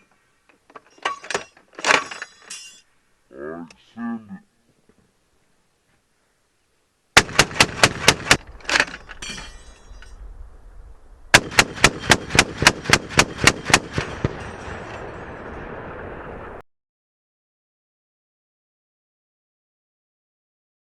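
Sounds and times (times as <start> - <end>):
heavy machine gun bursts: 7.2 - 8.9, 11.4 - 14.5
gunshot echoes: 11.3 - 14.9.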